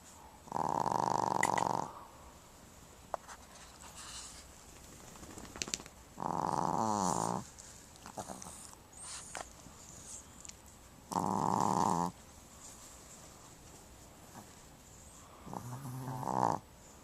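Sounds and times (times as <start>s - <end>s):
dog snoring: 0.5s - 2.0s, 6.2s - 7.4s, 11.1s - 12.2s, 15.2s - 16.6s.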